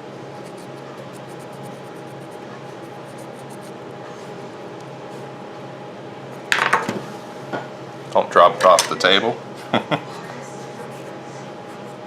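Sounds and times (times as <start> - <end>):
background hum: 0.0 - 8.2.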